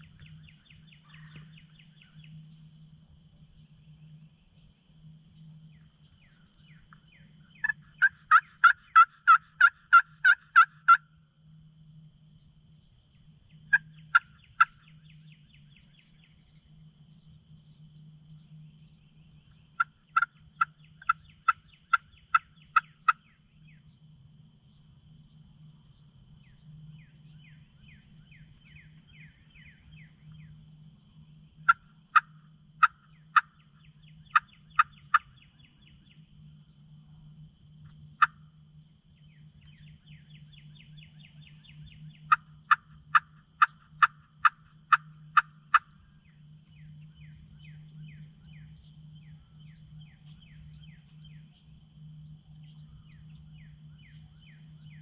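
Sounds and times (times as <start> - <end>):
turkey yelps on a friction call: 7.6 - 11.0, 19.8 - 23.2, 31.7 - 33.6, 34.3 - 35.3, 42.3 - 45.9.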